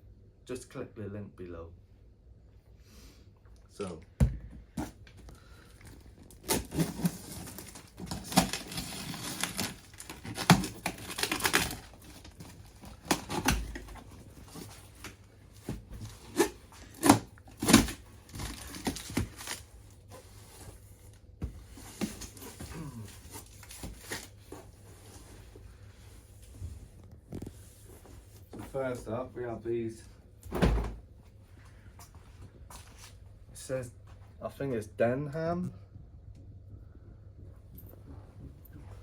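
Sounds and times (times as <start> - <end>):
packaging crinkling: 5.7 - 15.2, 16.0 - 19.8
cardboard tearing: 6.2 - 15.2, 16.0 - 19.8.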